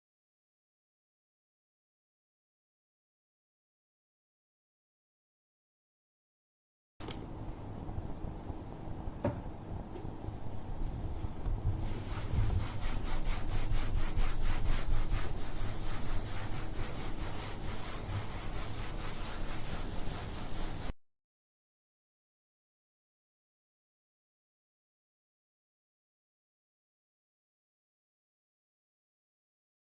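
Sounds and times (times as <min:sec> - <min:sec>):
cloth wiping kitchen surface: 0:10.3 - 0:21.0.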